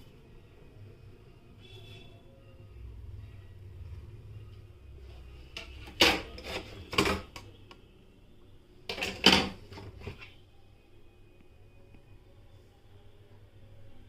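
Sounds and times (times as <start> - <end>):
hard objects clattering: 5.6 - 7.5, 8.9 - 10.3.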